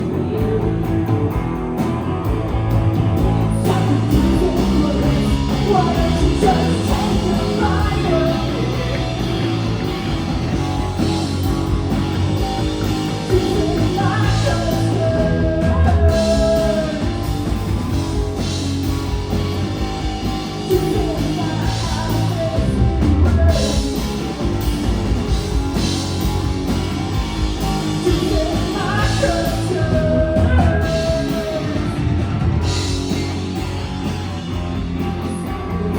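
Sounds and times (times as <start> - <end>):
guitar: 0.0 - 35.9
rock band playing live: 0.0 - 35.9
person singing: 3.3 - 9.2, 13.2 - 17.1, 28.0 - 32.0.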